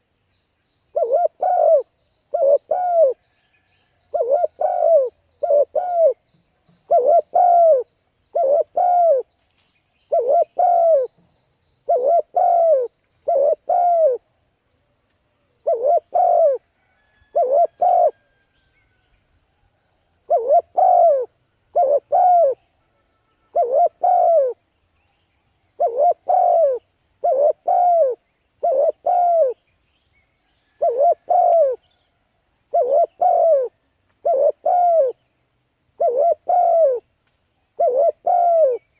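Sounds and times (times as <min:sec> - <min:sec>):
dove cooing: 0:00.9 - 0:03.2, 0:04.1 - 0:06.2, 0:06.8 - 0:09.3, 0:10.1 - 0:11.2, 0:11.8 - 0:14.2, 0:15.6 - 0:18.3, 0:20.2 - 0:22.6, 0:23.5 - 0:24.6, 0:25.8 - 0:29.6, 0:30.7 - 0:31.8, 0:32.7 - 0:35.2, 0:36.0 - 0:37.1, 0:37.8 - 0:38.9.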